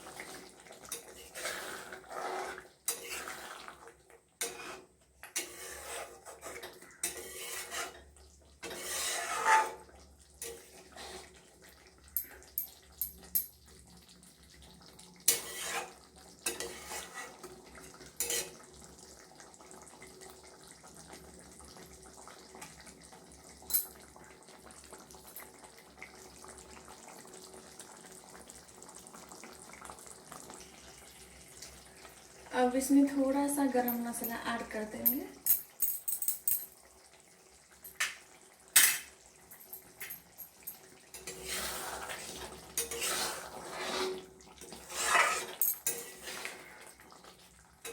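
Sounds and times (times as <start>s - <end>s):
pot cooking: 0.0s - 35.4s, 36.7s - 47.9s
metal spatula scraping a pot: 0.1s - 11.5s, 15.3s - 18.7s, 41.1s - 46.9s.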